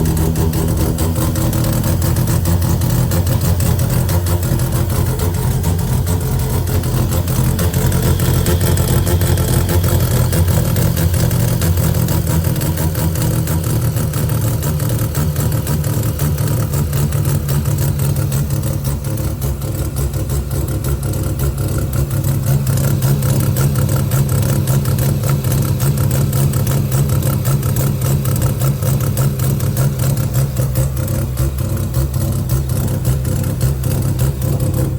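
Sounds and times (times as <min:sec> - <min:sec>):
rotary engine idling unevenly: 0:00.0 - 0:34.9.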